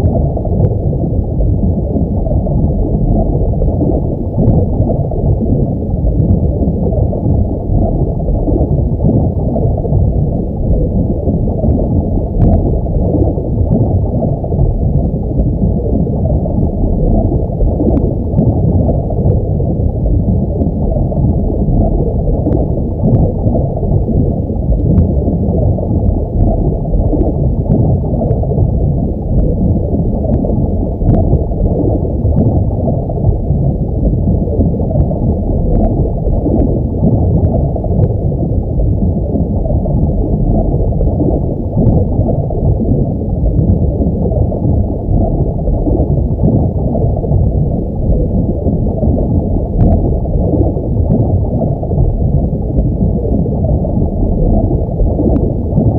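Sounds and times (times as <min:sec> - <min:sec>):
underwater rush of water: 0:00.0 - 0:55.9
faint underwater clicks: 0:24.7 - 0:28.6.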